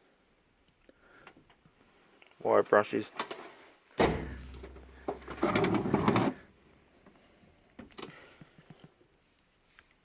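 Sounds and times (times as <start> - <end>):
steel drawer sliding on runners: 4.8 - 6.4.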